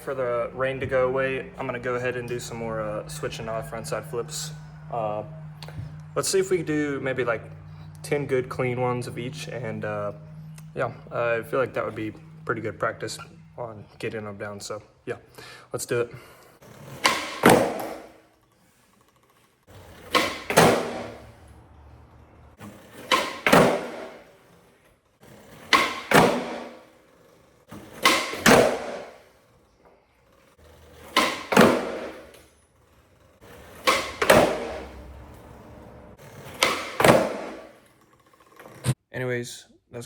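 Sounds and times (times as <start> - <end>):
skateboard wheels rolling: 15.9 - 39.0
skateboard landing crack: 16.6 - 18.2, 19.7 - 21.4, 22.6 - 24.4, 25.2 - 27.0, 27.7 - 29.4, 30.6 - 32.5, 33.4 - 35.5, 36.2 - 38.0
skateboard tail pop: 17.0 - 18.1, 20.1 - 21.2, 23.0 - 24.2, 25.7 - 26.8, 27.8 - 29.2, 31.1 - 32.2, 33.8 - 35.0, 36.6 - 37.8.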